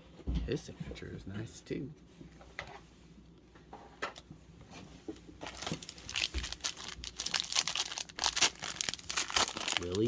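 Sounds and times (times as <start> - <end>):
card pack wrapper crinkling: 5.4 - 10.0.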